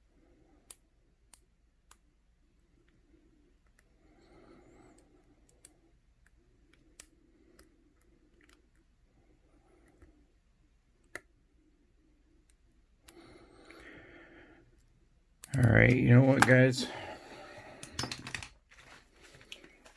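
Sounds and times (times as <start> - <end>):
lock pick clicking in padlock: 17.8 - 18.6.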